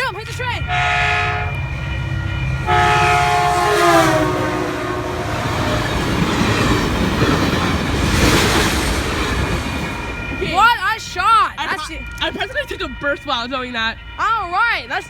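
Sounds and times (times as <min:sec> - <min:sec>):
train wheels rumbling and clattering: 0:00.0 - 0:15.0
train horn: 0:00.6 - 0:06.3.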